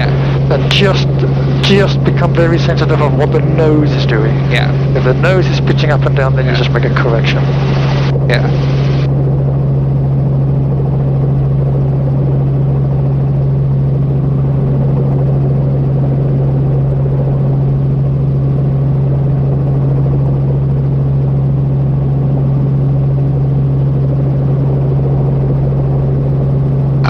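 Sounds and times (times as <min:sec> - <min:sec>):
helicopter rotor and engine drone: 0:00.0 - 0:27.0.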